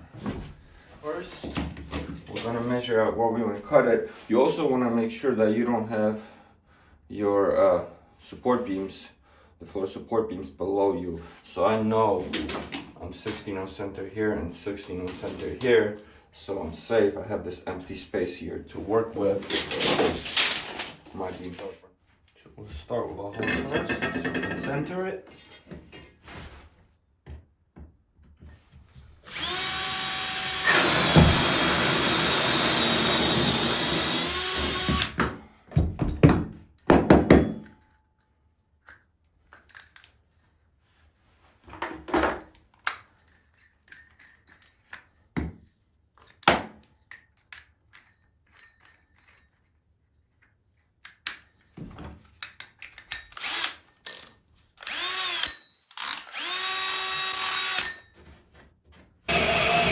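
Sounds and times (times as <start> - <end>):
power drill boring into board: 29.2 - 35.3, 53.4 - 58.1, 59.3 - 59.9.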